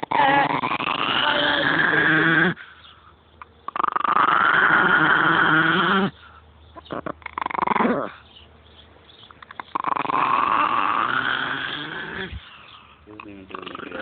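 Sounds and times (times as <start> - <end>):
dog grumbling: 0.0 - 2.7, 3.7 - 6.2, 6.8 - 8.2, 9.4 - 14.0.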